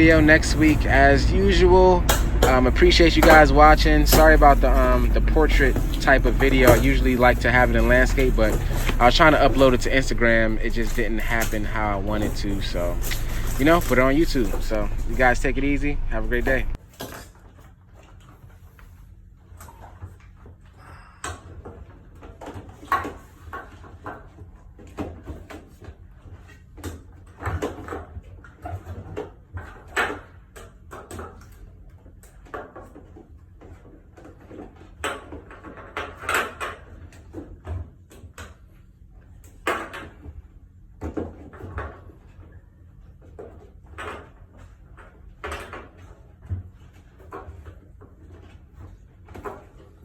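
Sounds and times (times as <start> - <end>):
steady low hum: 0.0 - 16.8
tools knocking and rattling: 0.0 - 16.8.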